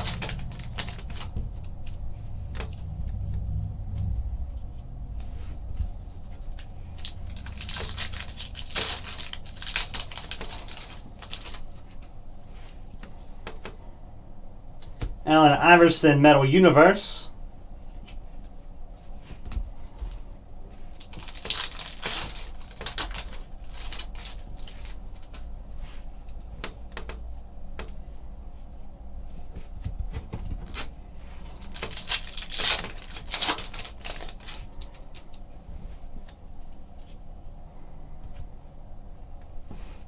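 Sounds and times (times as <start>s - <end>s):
trading cards rustling and flicking: 0.0s - 2.8s, 6.6s - 11.7s.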